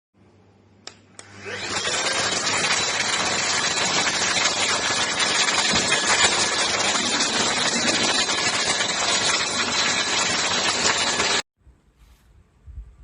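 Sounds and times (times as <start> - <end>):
vacuum cleaner motor running: 1.2 - 11.4.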